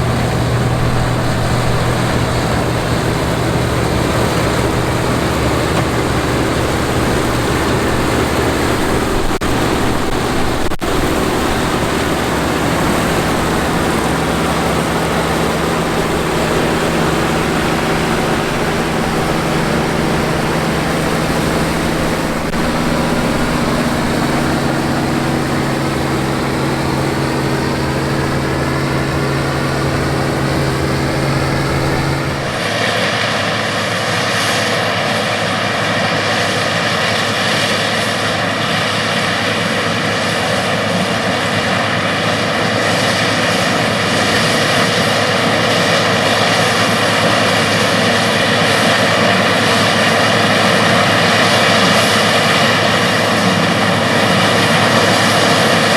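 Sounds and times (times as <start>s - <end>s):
machine with higher-pitched hum: 0.0s - 32.7s
combine harvester engine and threshing: 0.0s - 34.6s, 35.9s - 55.9s.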